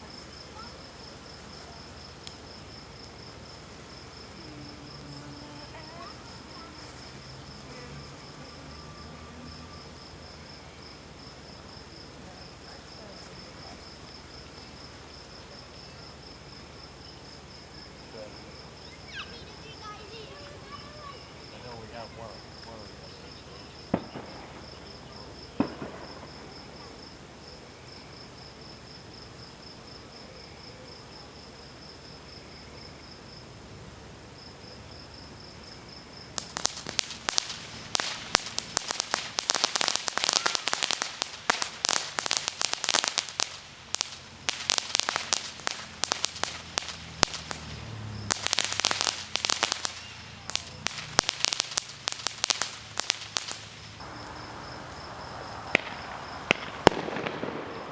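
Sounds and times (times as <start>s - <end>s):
crackling firework pops: 0.0s - 9.6s, 19.1s - 21.8s, 23.8s - 27.2s, 36.3s - 54.2s, 55.5s - 57.9s
firework bangs: 0.0s - 15.3s, 18.1s - 27.5s, 36.3s - 57.9s
crickets chirping: 0.0s - 57.9s.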